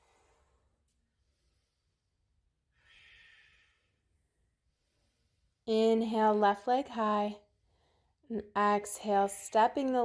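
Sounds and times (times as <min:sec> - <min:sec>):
faint exhaled breath: 0:02.7 - 0:04.1.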